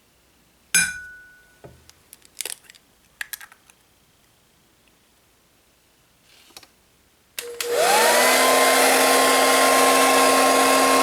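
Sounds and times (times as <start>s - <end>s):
kitchenware clinking: 0.8s - 1.6s.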